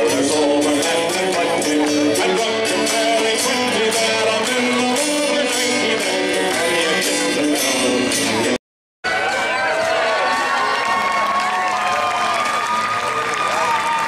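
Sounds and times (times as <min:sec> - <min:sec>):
music with strummed guitar: 0:00.0 - 0:08.6.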